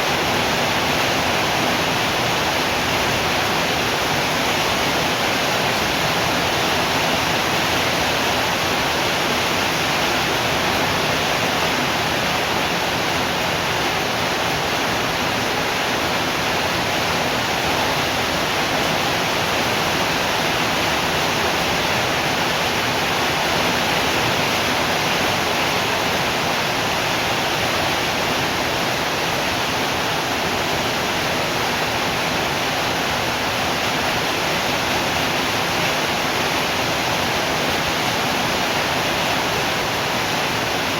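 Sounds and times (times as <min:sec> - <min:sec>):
heavy rainfall: 0:00.0 - 0:40.9.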